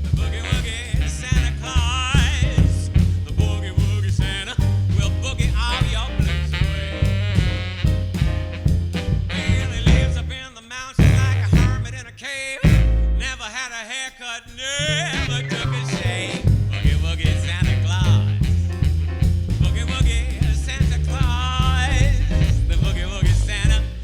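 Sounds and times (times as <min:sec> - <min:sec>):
bass and drums beat: 0:00.0 - 0:13.5, 0:14.8 - 0:24.0
swing band playing: 0:00.0 - 0:13.7, 0:14.5 - 0:24.0.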